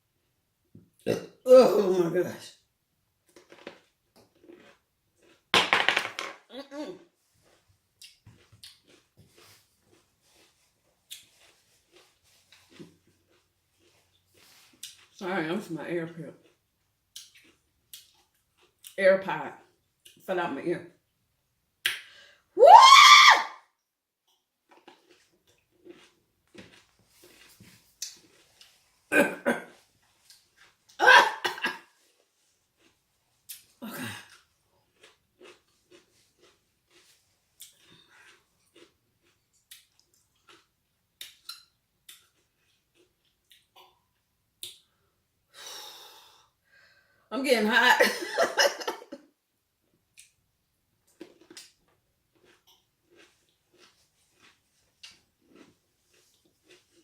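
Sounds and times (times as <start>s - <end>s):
person chewing food: 3.2s - 5.5s, 7.2s - 15.2s, 16.4s - 19.0s, 24.2s - 45.1s, 51.0s - 57.0s
woman's throaty vocal outbursts: 22.6s - 23.4s.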